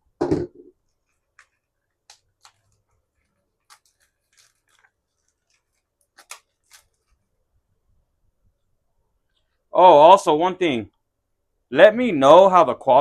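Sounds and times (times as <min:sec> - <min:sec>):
plastic packaging clicking and crinkling: 0:00.8 - 0:07.3.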